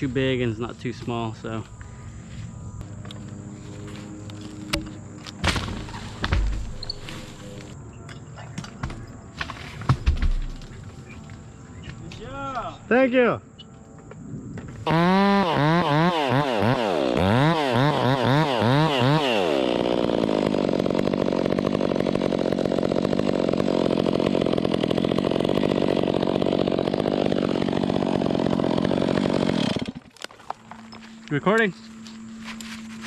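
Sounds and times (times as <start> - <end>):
chainsaw revving: 14.8 - 30.1.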